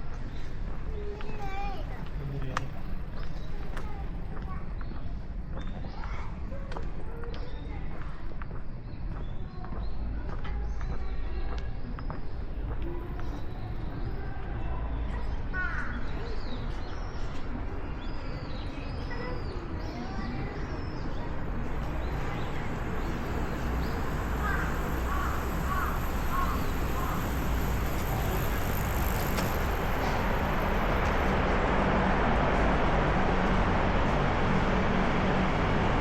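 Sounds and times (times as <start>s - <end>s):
city traffic rumble: 0.0s - 36.0s
birds chirping: 8.5s - 31.6s.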